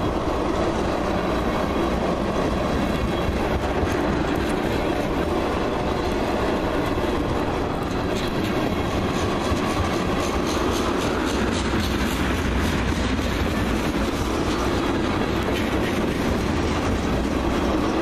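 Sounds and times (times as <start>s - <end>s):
freight train rolling past: 0.0s - 18.0s
wheels clicking over rail joints: 0.0s - 18.0s.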